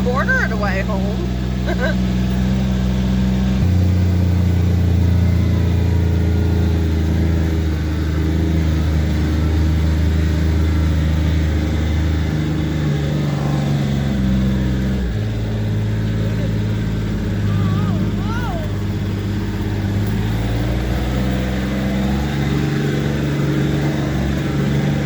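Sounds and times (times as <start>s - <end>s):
utility vehicle engine humming: 0.0s - 25.0s.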